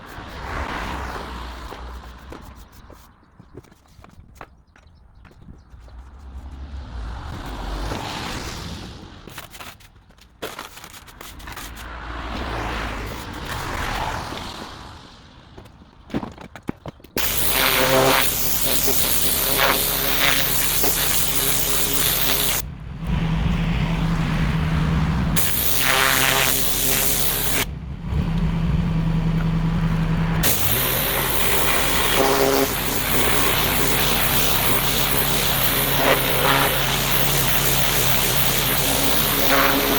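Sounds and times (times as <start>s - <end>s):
pressure washer spraying: 17.2s - 22.6s, 25.4s - 27.7s, 30.4s - 39.9s
machine running hum: 17.2s - 39.9s.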